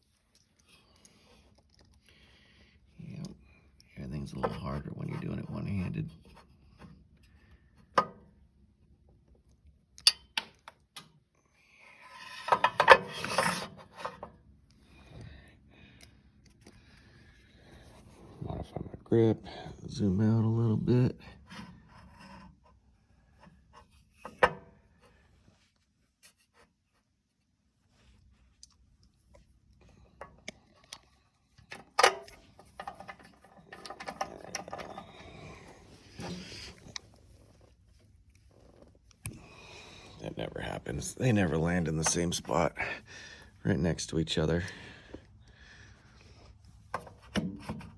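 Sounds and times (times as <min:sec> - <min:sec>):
metal tools clattering: 0:32.0 - 0:35.6.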